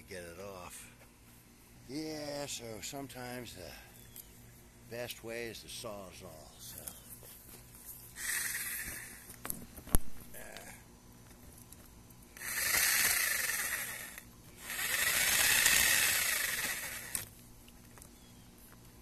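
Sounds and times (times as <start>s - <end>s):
reciprocating saw cutting plastic: 8.2s - 9.2s, 12.4s - 17.3s.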